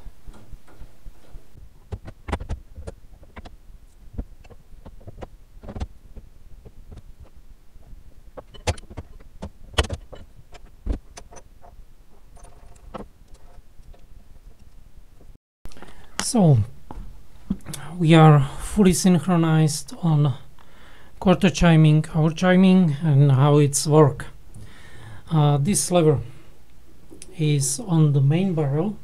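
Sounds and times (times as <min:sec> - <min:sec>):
metallic clicks and knocks: 0:00.2 - 0:03.6, 0:06.9 - 0:14.8.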